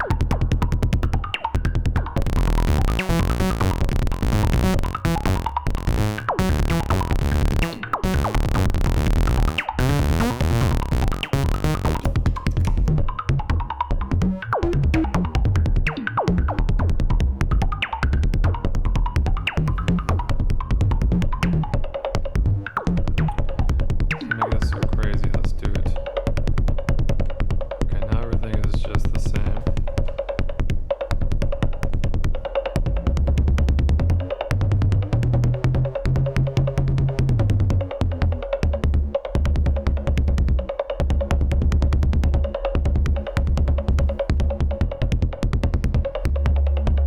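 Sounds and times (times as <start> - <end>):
synthesizer electro beat: 0.0 - 25.1
deep synth bass: 0.0 - 47.0.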